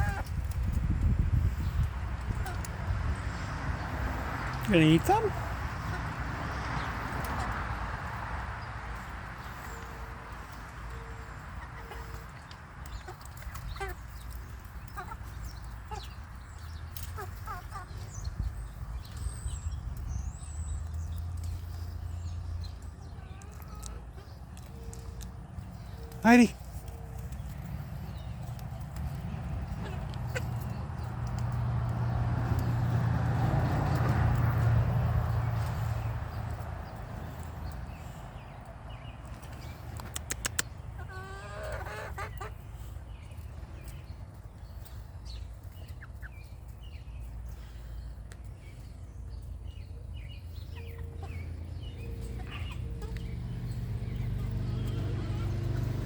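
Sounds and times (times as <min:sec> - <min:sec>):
chicks peeping: 0:00.0 - 0:56.0
sharp clicks: 0:39.9 - 0:40.8.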